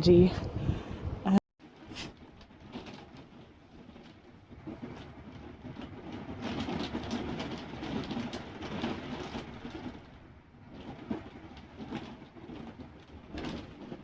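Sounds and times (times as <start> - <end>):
storm wind gusting: 0.0 - 1.4.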